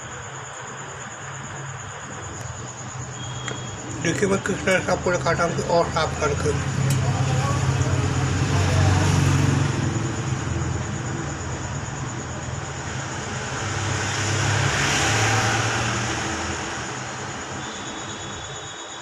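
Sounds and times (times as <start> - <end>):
low engine hum: 1.4 - 17.0
motor vehicle passing: 3.8 - 17.6.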